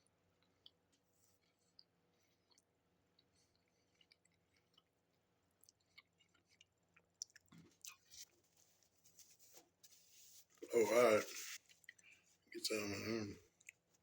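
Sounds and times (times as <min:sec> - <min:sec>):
chewing mouth clicks and smacks: 0:00.4 - 0:08.3, 0:11.7 - 0:12.3, 0:13.5 - 0:14.0.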